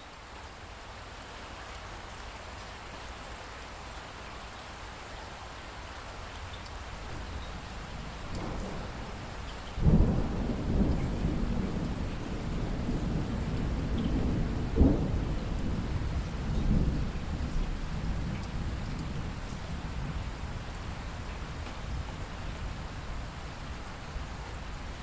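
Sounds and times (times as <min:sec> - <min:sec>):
steady rain: 0:00.0 - 0:25.0
thunder rumbling: 0:07.1 - 0:23.8.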